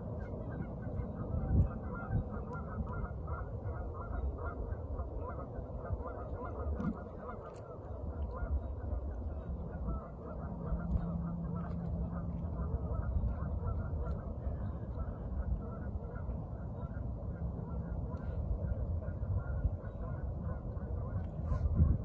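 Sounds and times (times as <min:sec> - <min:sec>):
geese honking: 0:00.1 - 0:22.0.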